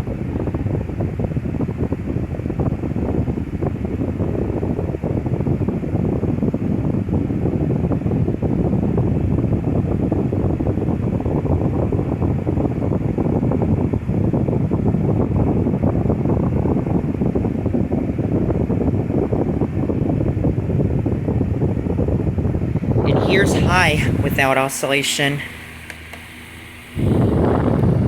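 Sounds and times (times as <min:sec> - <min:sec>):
table fan blowing air: 0:00.0 - 0:28.0.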